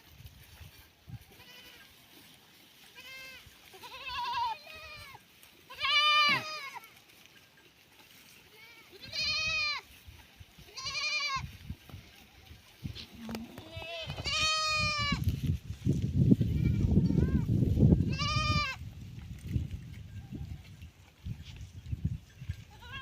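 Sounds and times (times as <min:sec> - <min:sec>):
goats bleating: 0:01.3 - 0:02.0, 0:02.8 - 0:07.1, 0:08.3 - 0:09.9, 0:10.6 - 0:11.5, 0:13.0 - 0:15.3, 0:16.5 - 0:18.8, 0:22.6 - 0:23.0.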